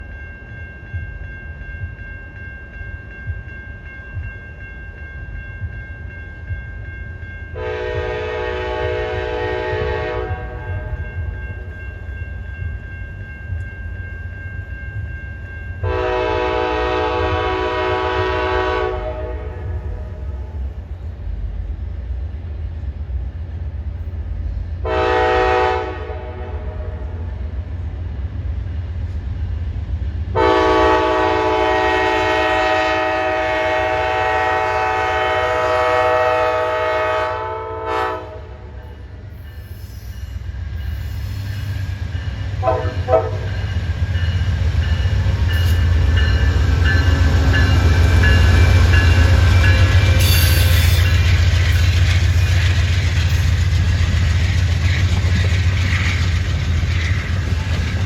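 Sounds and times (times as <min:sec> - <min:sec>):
train low rumble: 0:00.0 - 0:58.0
train air horn blasts: 0:07.6 - 0:11.1, 0:15.8 - 0:20.4, 0:24.8 - 0:27.2, 0:30.4 - 0:38.8, 0:42.6 - 0:43.6, 0:45.5 - 0:51.1.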